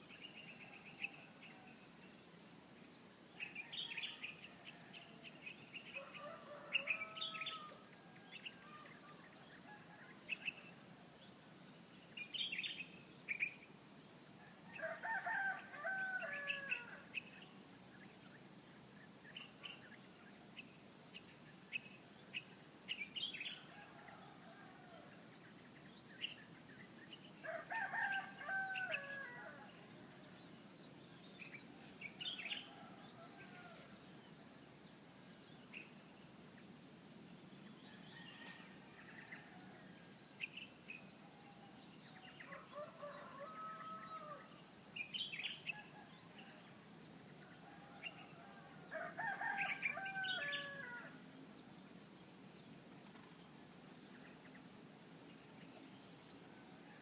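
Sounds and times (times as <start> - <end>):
rooster crowing: 6.0 - 7.8, 14.7 - 16.9, 27.4 - 29.7, 42.5 - 44.6, 47.7 - 51.1.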